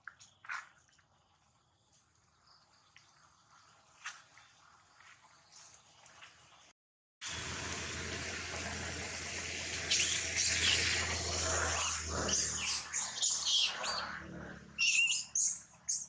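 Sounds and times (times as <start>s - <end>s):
monkeys squealing: 11.7s - 14.2s, 14.8s - 16.0s.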